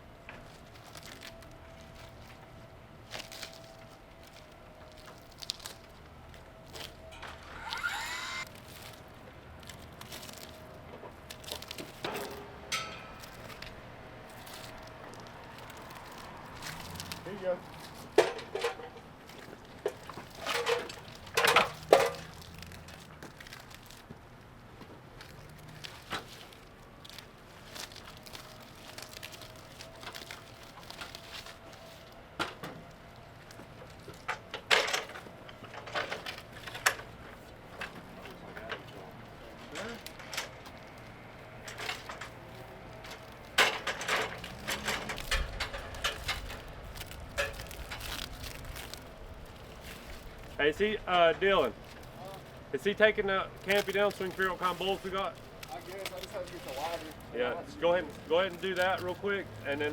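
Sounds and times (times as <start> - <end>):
knocks and clatters of handling: 9.6 - 24.2, 27.2 - 50.6.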